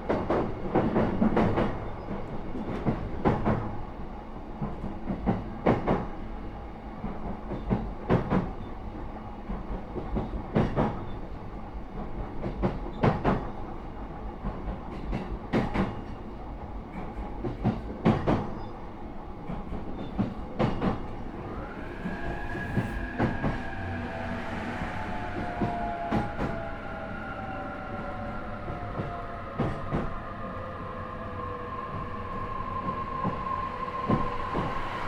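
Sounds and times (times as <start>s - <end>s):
train low rumble: 0.0s - 35.0s
electric whine: 21.3s - 28.7s.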